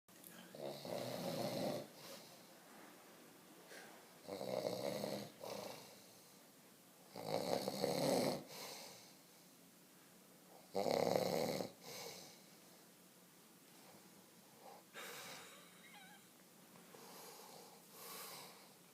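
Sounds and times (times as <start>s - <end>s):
man snoring loudly: 0.5s - 1.9s, 4.2s - 5.9s, 7.1s - 8.5s, 10.7s - 11.8s.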